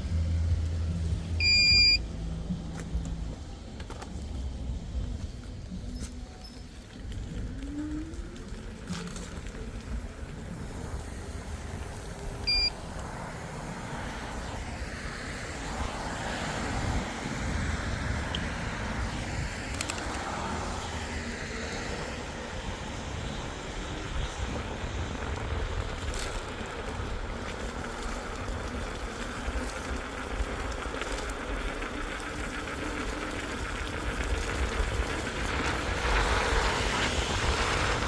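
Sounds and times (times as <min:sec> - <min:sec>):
low road rumble: 0:00.0 - 0:38.0
brief high beep: 0:01.4 - 0:02.0, 0:12.5 - 0:12.8
wind on microphone: 0:09.6 - 0:28.9, 0:33.5 - 0:38.0.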